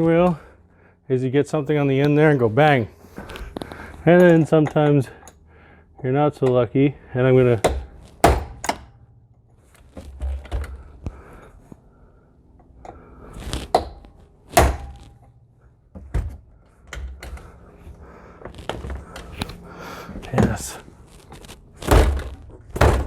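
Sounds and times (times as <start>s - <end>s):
steering wheel knocks and thuds: 7.7s - 8.9s, 21.8s - 23.0s.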